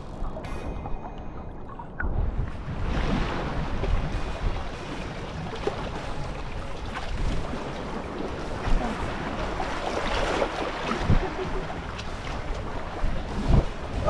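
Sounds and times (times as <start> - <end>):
ocean surf on the shore: 0.0 - 14.0
wind rumbling on microphone: 0.0 - 14.0.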